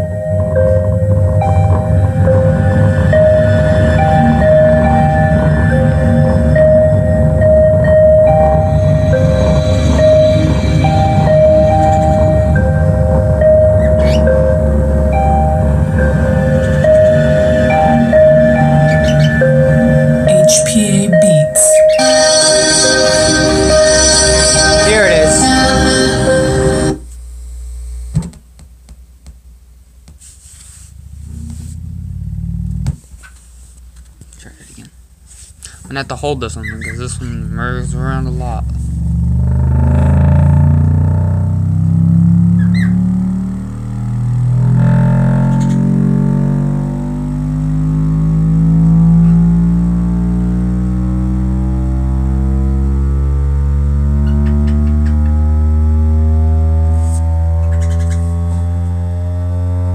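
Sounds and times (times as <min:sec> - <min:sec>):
subwoofer playing bass music: 0:00.0 - 0:27.7, 0:35.8 - 0:59.9
low bass tone: 0:00.0 - 0:28.2, 0:30.8 - 0:33.0, 0:35.7 - 0:59.9.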